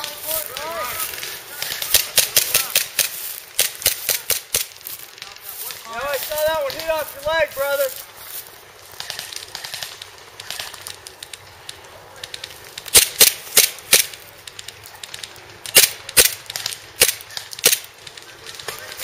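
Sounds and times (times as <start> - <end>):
airsoft pistols firing: 0.4 - 4.7, 12.8 - 14.2, 15.7 - 17.9.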